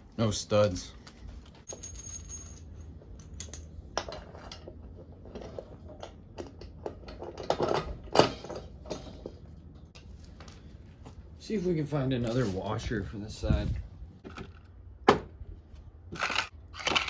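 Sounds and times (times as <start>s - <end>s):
metal parts clinking and rattling: 1.6s - 9.5s, 16.1s - 17.0s.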